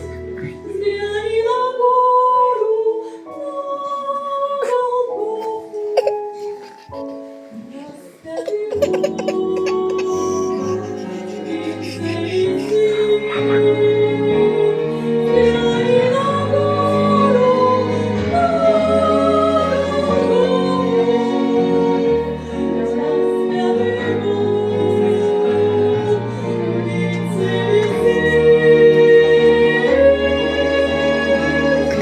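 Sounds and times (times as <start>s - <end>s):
woman singing long held notes: 7.6s - 21.1s.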